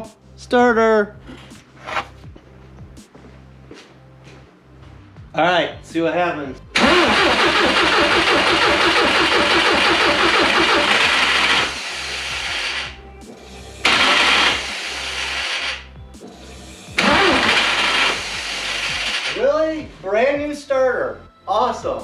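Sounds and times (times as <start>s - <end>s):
starter motor cranking engine: 6.7s - 13.0s, 13.8s - 15.8s, 16.7s - 19.7s.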